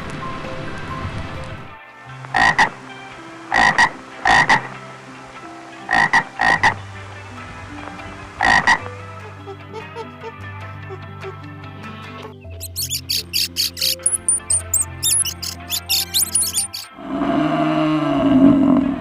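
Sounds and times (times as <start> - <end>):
frog croaking: 2.3 - 2.8, 3.5 - 4.7, 5.8 - 6.8, 8.4 - 11.4, 12.6 - 16.9.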